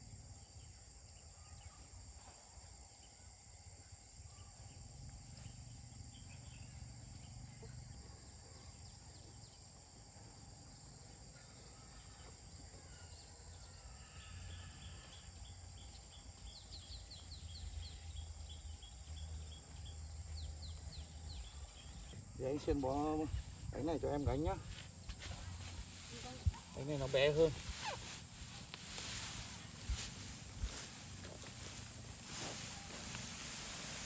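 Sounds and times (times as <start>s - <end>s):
insects droning: 0.0s - 34.0s
bird chirping: 14.5s - 24.3s.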